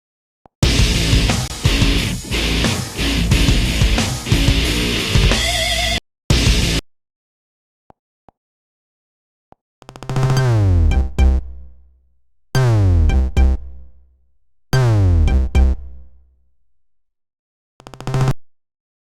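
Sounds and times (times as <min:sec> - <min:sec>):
electronic synth tone phrase: 0:10.4 - 0:11.8, 0:12.6 - 0:14.0, 0:15.1 - 0:16.1.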